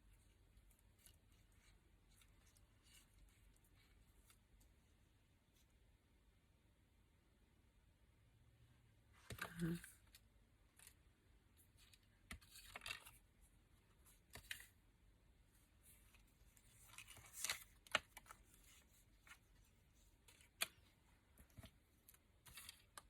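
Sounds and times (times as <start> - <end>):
paper rustling: 15.8 - 21.8.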